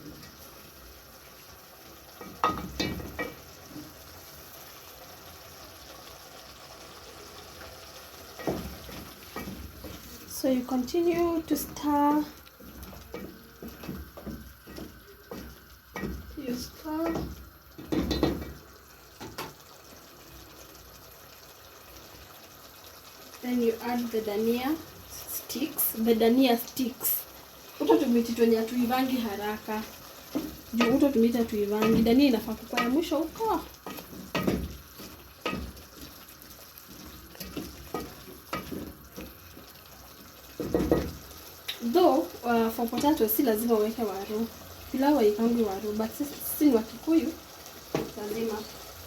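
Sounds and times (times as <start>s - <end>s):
faint sizzle: 0.0s - 49.0s
spoon knocking on pot: 12.7s - 16.4s, 17.0s - 18.6s, 30.3s - 33.1s, 33.8s - 36.2s, 37.4s - 39.4s, 40.6s - 41.8s.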